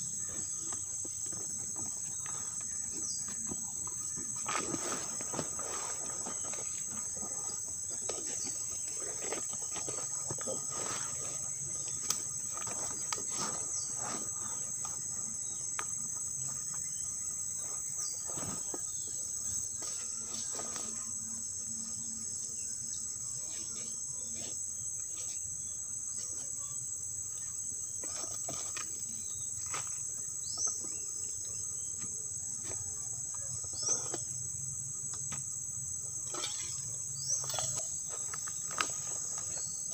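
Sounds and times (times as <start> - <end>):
insects droning: 0.0 - 39.9.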